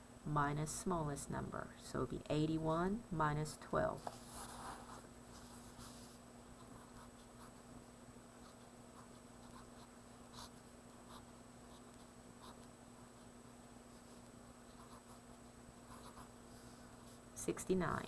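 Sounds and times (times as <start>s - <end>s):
low electrical hum: 0.0s - 18.0s
pencil scratching on paper: 4.1s - 7.6s, 13.9s - 17.2s.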